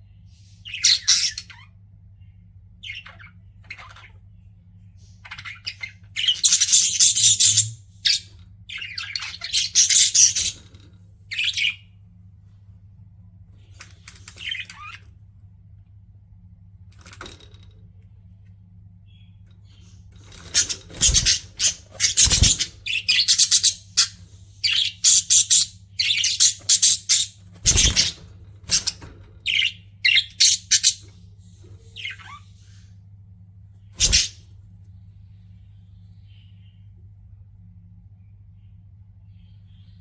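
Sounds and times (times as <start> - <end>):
budgerigars chirping: 0.7 - 1.7, 5.0 - 10.7, 11.3 - 11.9, 20.3 - 31.2, 31.8 - 32.6, 34.0 - 34.4.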